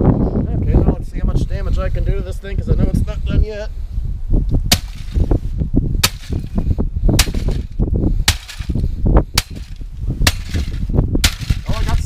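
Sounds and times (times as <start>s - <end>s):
sledgehammer smashing stereo: 7.2s - 7.7s, 10.3s - 11.7s.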